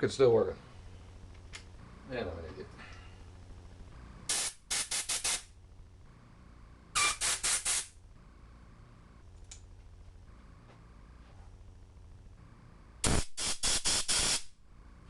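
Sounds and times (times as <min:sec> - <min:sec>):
hissing spray bursts: 0:04.3 - 0:05.5, 0:07.0 - 0:08.0, 0:13.0 - 0:14.5.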